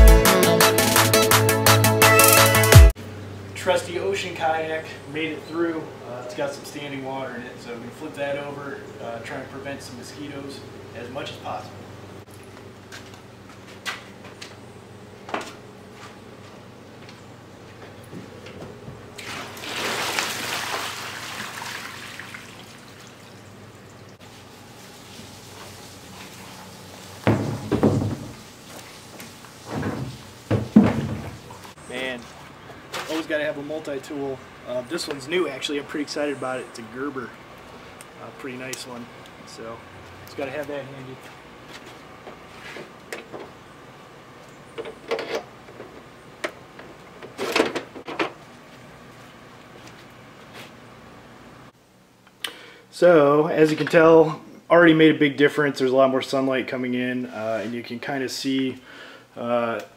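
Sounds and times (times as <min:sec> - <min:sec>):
water pouring out of a kayak: 0:19.2 - 0:23.4
shutters rattling and scraping: 0:44.7 - 0:48.4.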